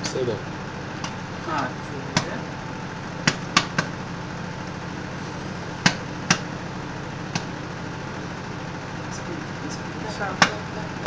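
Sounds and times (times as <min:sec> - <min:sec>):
microwave oven hum: 0:00.0 - 0:11.0
popcorn kernels popping: 0:03.2 - 0:04.0, 0:05.8 - 0:06.5, 0:07.2 - 0:08.2, 0:10.3 - 0:10.7.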